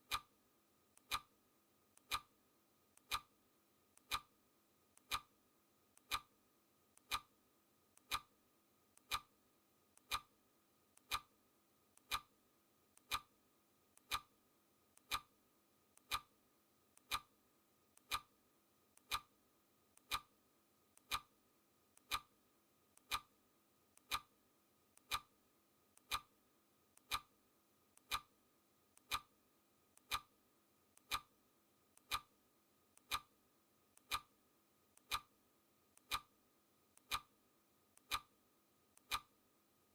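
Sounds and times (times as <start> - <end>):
clock ticking: 1.0 - 1.3, 2.0 - 2.3, 3.0 - 3.3, 4.0 - 4.3, 5.0 - 5.3, 6.0 - 6.3, 7.0 - 7.3, 8.0 - 8.3, 9.0 - 9.3, 10.0 - 10.3, 11.0 - 11.3, 12.0 - 12.3, 13.0 - 13.3, 14.0 - 14.3, 15.0 - 15.3, 16.0 - 16.3, 17.0 - 17.3, 18.0 - 18.3, 19.0 - 19.3, 20.0 - 20.3, 21.0 - 21.3, 22.0 - 22.3, 23.0 - 23.3, 24.0 - 24.3, 25.0 - 25.3, 26.0 - 26.3, 27.0 - 27.3, 28.0 - 28.3, 29.0 - 29.3, 30.0 - 30.3, 31.0 - 31.3, 32.0 - 32.3, 33.0 - 33.3, 34.0 - 34.3, 35.0 - 35.3, 36.0 - 36.3, 37.0 - 37.3, 38.0 - 38.3, 39.0 - 39.3.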